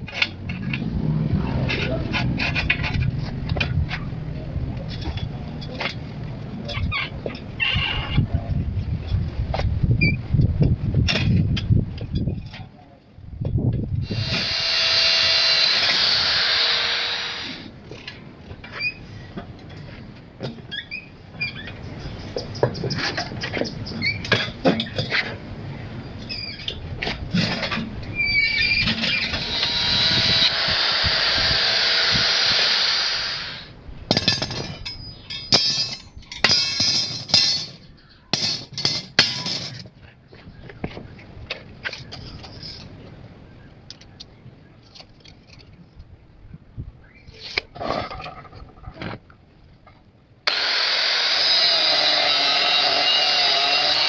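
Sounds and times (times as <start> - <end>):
metal clinks and knocks: 34.1 - 40.0.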